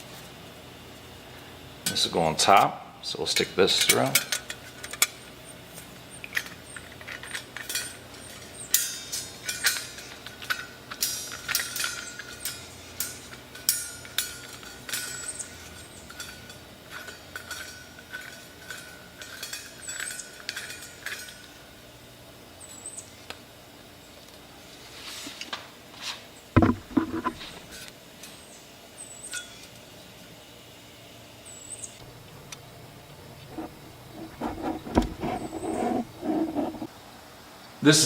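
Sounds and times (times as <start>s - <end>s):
metal parts clicking and clinking: 6.2s - 21.6s.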